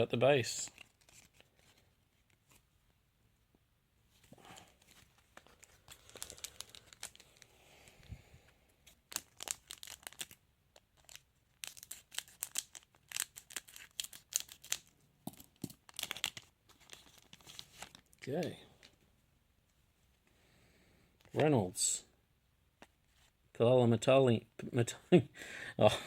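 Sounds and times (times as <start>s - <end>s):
wrapper being torn and crinkled: 5.4s - 7.5s, 9.1s - 14.9s, 15.7s - 18.2s.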